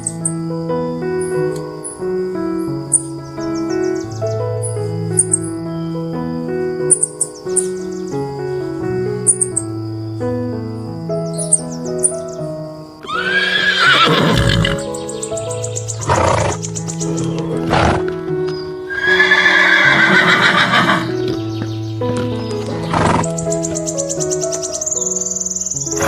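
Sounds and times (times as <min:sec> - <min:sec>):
background music: 0:12.9 - 0:26.0
horse neighing: 0:13.0 - 0:24.2
horse snorting: 0:13.0 - 0:24.4.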